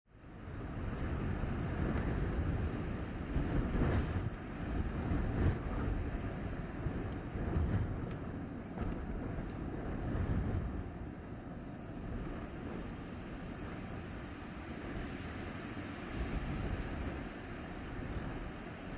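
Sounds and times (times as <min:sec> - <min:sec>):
blizzard wind gusting: 0:00.1 - 0:18.9.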